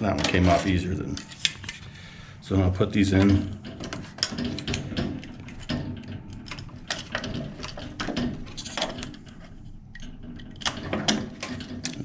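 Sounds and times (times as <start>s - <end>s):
wire connectors clicking: 3.0s - 12.0s.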